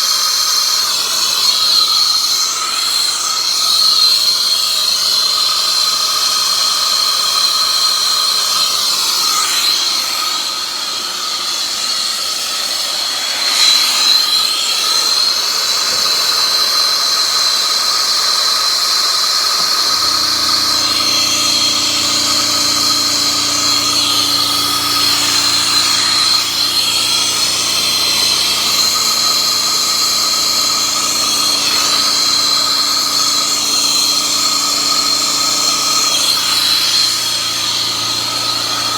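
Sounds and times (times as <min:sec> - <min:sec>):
torch flame hissing and whistling: 0:08.9 - 0:16.1, 0:19.5 - 0:38.9
low hum: 0:19.6 - 0:38.9.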